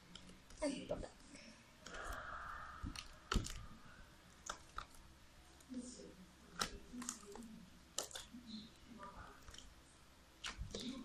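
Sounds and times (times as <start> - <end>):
slime squelching and popping: 1.8 - 5.8, 6.5 - 11.0.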